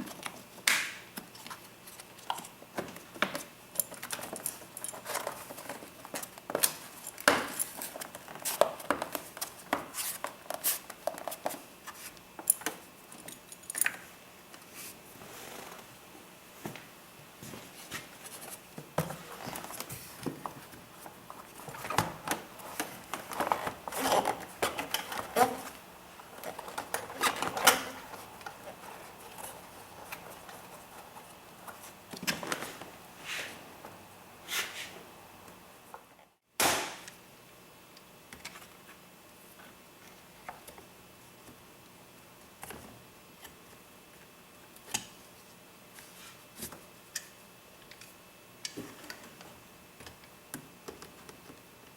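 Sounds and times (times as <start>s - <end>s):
sharp knock: 36.6s - 37.0s
hands clicking and tapping on parts: 46.6s - 51.7s.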